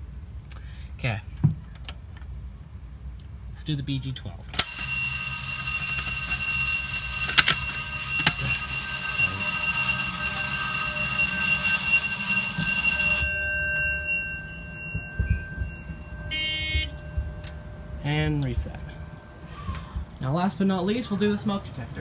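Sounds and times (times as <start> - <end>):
loud fire alarm tone: 4.6 - 19.7
short beep: 14.0 - 17.4.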